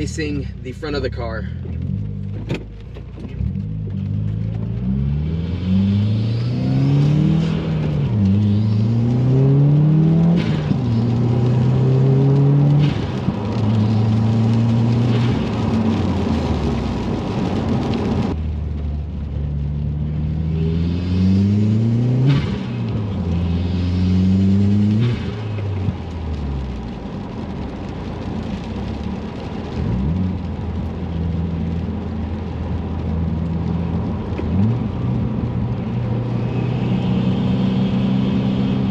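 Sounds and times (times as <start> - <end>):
car engine accelerating through gears: 1.6 - 27.7, 28.3 - 38.9.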